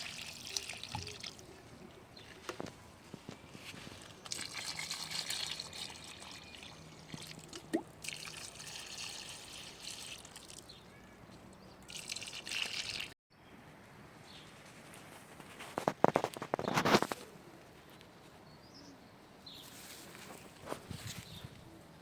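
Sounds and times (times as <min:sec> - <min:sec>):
water splashing onto plants: 0:04.0 - 0:10.7.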